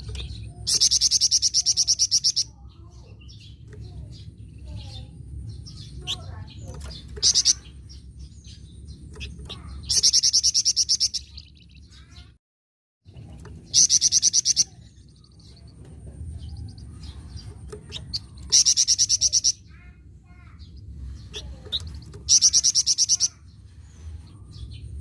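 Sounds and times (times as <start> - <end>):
songbird trilling: 0.0 - 12.3, 16.3 - 19.9, 21.2 - 23.5
faint bird chirps: 13.1 - 25.0.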